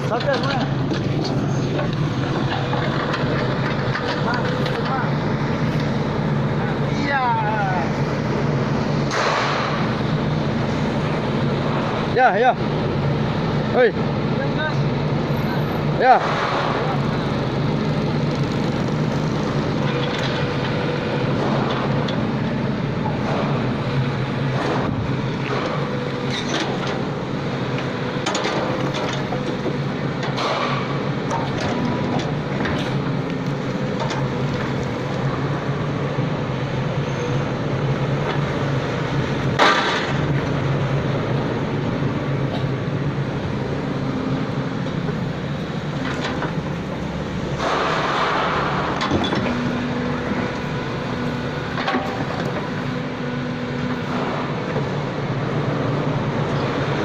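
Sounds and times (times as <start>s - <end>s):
excavator diesel engine running: 0.0s - 57.0s
metallic clanks and knocks: 47.6s - 49.6s.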